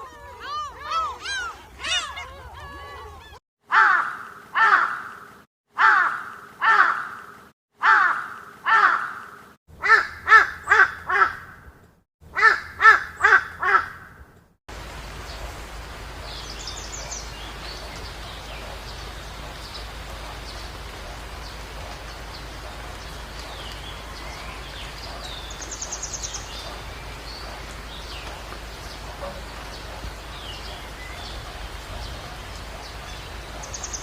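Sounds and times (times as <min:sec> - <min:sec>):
crow cawing: 0:00.4 - 0:05.2, 0:05.8 - 0:11.6, 0:12.4 - 0:14.1.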